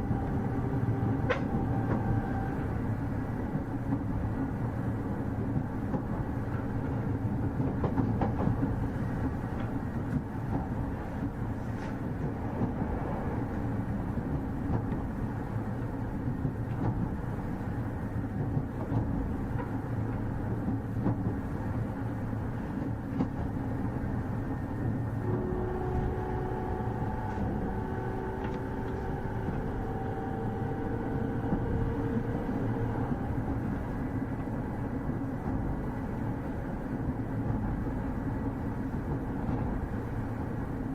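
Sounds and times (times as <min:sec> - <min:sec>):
train motor whine: 0:00.0 - 0:02.9, 0:24.8 - 0:33.5
train wheels rumbling on rail: 0:00.0 - 0:40.9.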